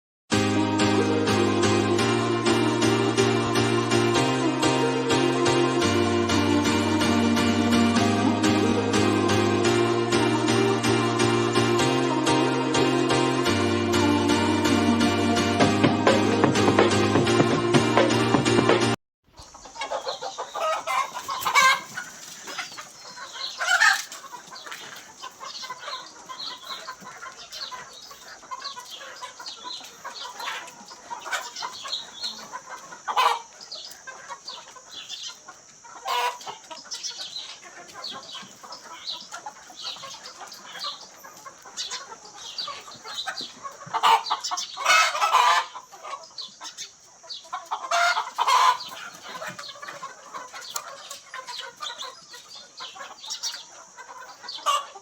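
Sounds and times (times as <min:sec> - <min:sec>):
chickens clucking: 0:00.6 - 0:18.7, 0:19.3 - 0:55.0
chickens squawking: 0:19.3 - 0:55.0.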